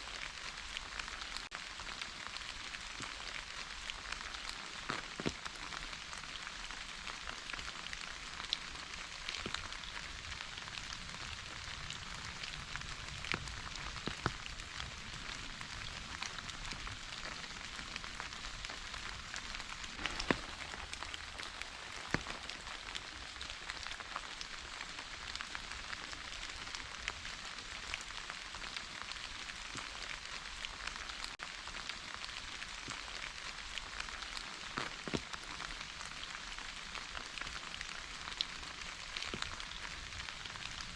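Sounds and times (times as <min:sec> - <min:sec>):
steady rain falling: 0:00.0 - 0:40.9
raindrops tapping: 0:00.1 - 0:40.9.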